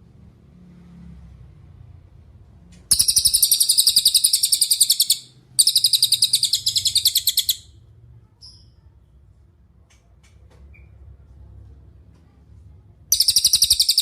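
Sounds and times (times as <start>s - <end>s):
songbird trilling: 2.9s - 7.7s, 13.1s - 14.0s.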